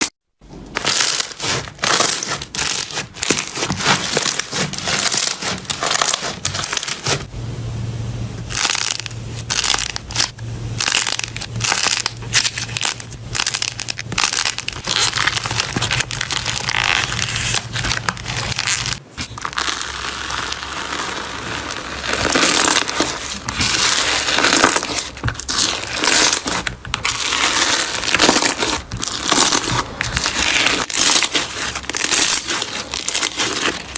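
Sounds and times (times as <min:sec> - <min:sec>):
slime squishing and popping: 0:08.5 - 0:33.9.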